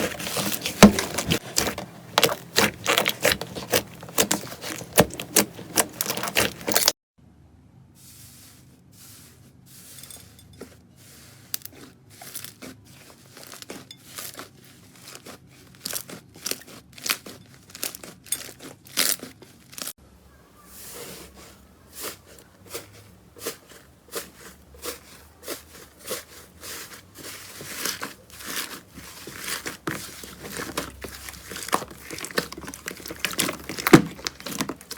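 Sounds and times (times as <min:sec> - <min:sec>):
slime crackling and popping: 0:00.0 - 0:07.0, 0:13.4 - 0:19.9, 0:27.6 - 0:34.9.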